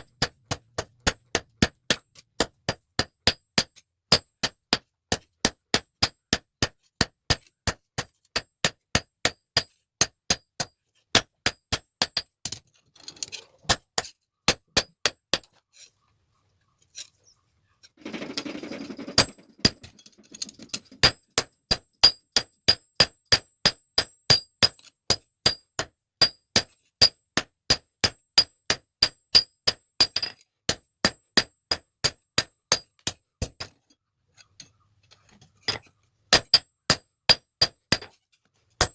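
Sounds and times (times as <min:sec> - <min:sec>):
hammer striking steel on anvil: 0:21.0 - 0:33.8, 0:35.7 - 0:38.2.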